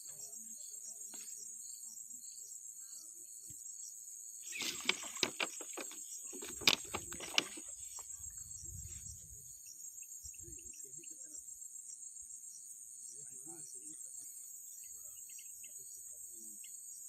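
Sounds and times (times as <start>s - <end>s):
insects chirring: 0.0s - 17.0s
sharp clicks and knocks: 4.6s - 7.8s.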